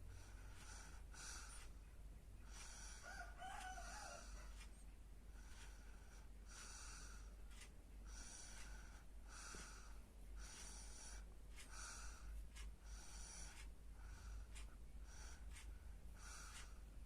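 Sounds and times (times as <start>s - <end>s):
low hum: 0.0s - 3.1s
faint rooster crowing: 2.6s - 4.8s.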